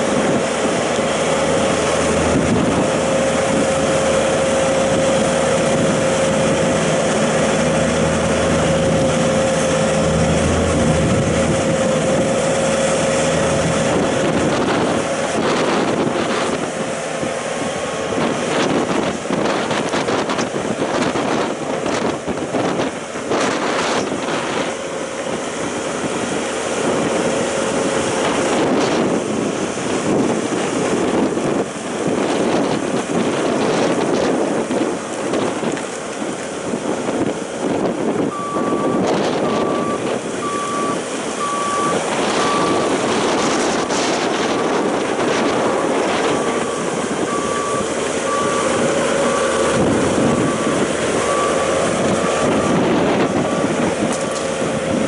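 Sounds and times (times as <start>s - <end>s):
diesel engine under load: 0.0s - 55.0s
reversing alarm beeping: 38.3s - 44.6s, 45.3s - 54.8s.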